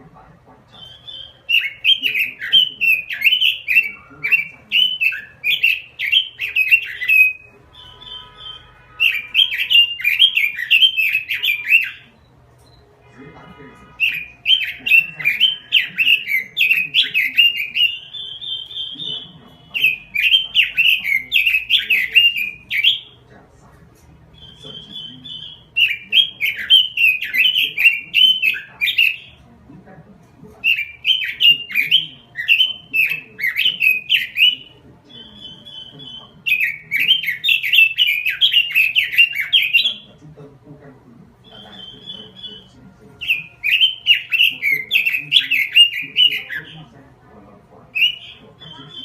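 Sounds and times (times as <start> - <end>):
bird warbling song: 0.0 - 29.5, 30.1 - 49.0
bird whistled note: 7.0 - 11.9.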